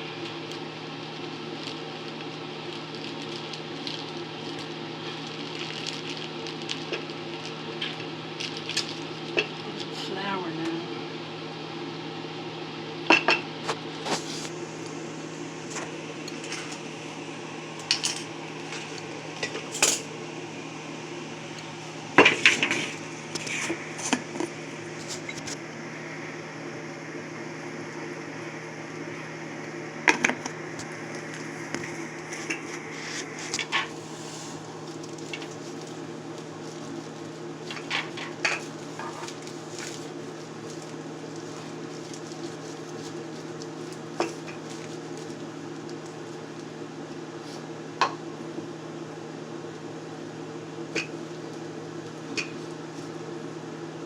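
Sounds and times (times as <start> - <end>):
low appliance hum: 0.0 - 54.0.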